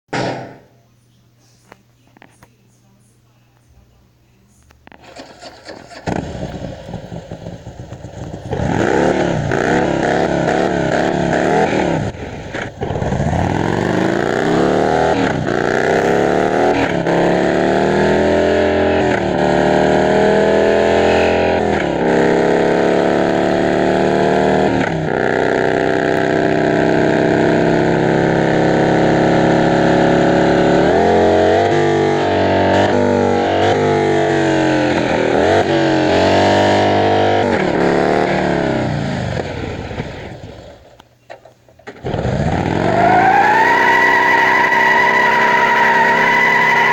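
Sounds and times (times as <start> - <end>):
motorcycle engine revving: 4.8 - 41.0, 41.8 - 46.9.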